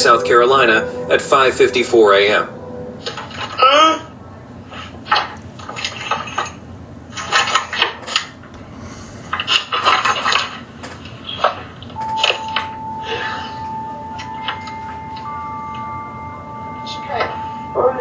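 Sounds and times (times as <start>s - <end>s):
steady high tone: 0.0s - 5.1s, 12.0s - 18.0s.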